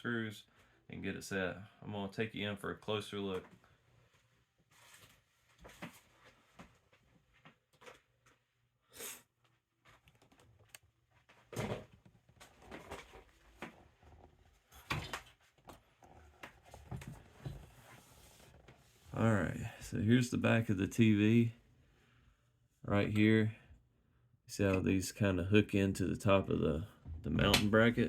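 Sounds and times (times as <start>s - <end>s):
loud thumps: 27.0s - 28.0s.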